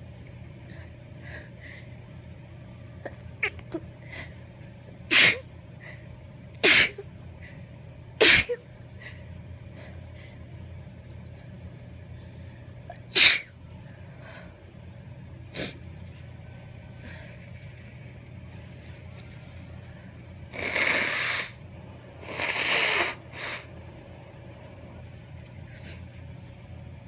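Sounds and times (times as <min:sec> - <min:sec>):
steady low hum: 0:00.0 - 0:27.0
woman sneezing: 0:06.6 - 0:07.0, 0:08.2 - 0:08.6, 0:13.2 - 0:13.5
nose blowing: 0:20.5 - 0:21.6, 0:22.2 - 0:23.7.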